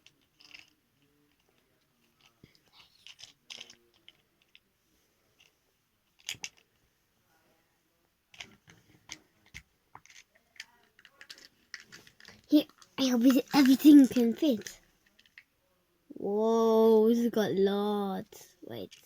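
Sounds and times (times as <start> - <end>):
plastic toys clattering: 0.0 - 4.7, 5.4 - 6.8, 8.3 - 15.5
plastic toys clicking and rustling: 0.0 - 4.7, 5.4 - 6.8, 8.3 - 15.5, 18.8 - 19.0.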